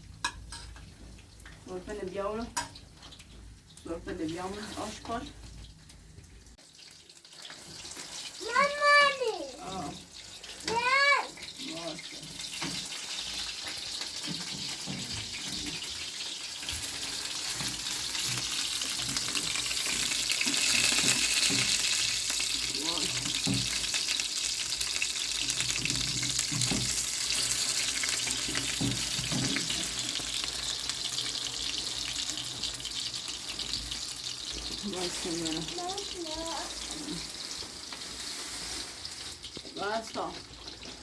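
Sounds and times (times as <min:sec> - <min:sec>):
tap water running into sink: 0:16.6 - 0:36.8.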